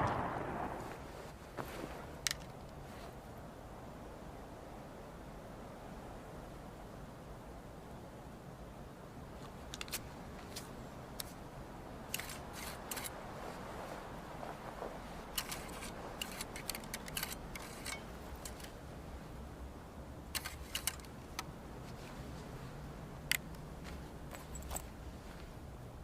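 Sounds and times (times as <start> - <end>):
low steady hum: 0.0 - 26.0
metallic clicks from handling rifle: 2.2 - 2.8, 9.7 - 11.4, 12.1 - 13.2, 15.3 - 18.8, 20.3 - 21.5, 23.2 - 23.6, 24.3 - 24.9.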